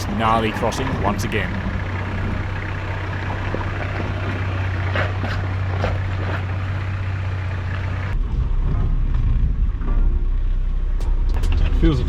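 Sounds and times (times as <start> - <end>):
vehicle engine droning: 0.0 - 12.0.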